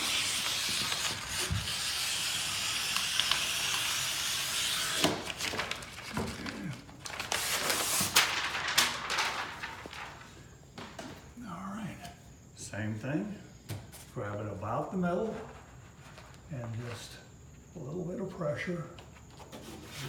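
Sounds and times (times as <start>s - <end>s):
scissors sliding through vinyl: 0.0s - 5.4s
scissors snipping vinyl: 0.1s - 5.1s.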